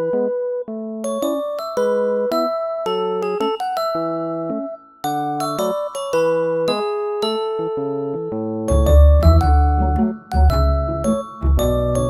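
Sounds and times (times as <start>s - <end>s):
mallet percussion melody: 8.7s - 12.0s.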